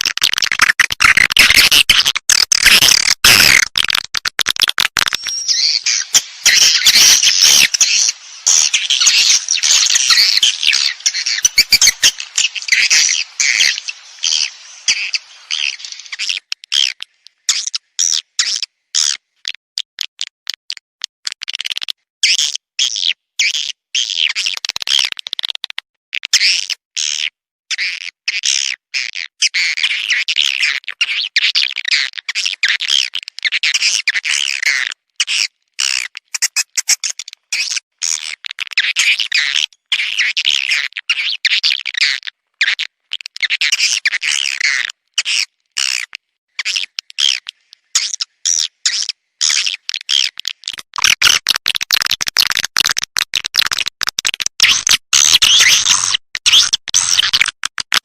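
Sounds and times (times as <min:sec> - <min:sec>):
swiftlet chirps and twitters: 0:05.0 - 0:18.6
rough scratchy low noise: 0:05.2 - 0:16.3.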